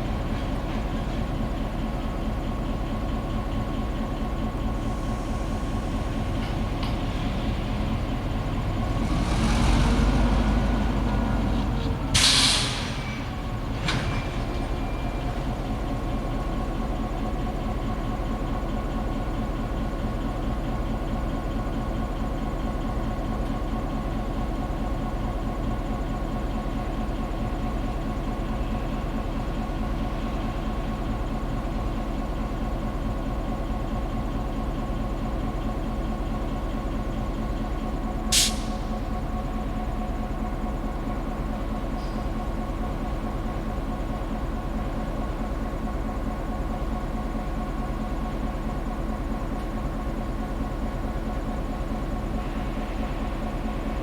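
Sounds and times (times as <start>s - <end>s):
locomotive diesel engine running: 0.0s - 54.0s
sharp hiss of air: 12.2s - 13.1s, 38.3s - 38.8s.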